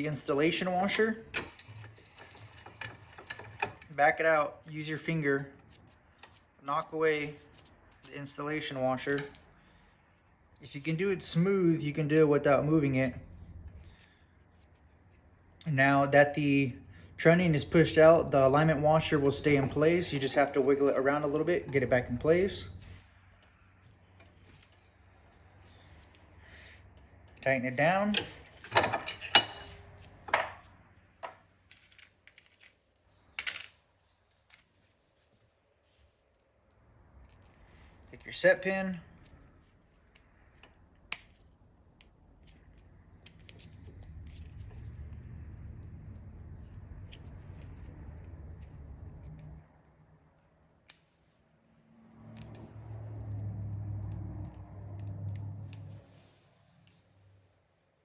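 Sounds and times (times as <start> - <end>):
small steel parts clinking: 26.9 - 30.6, 31.2 - 35.0.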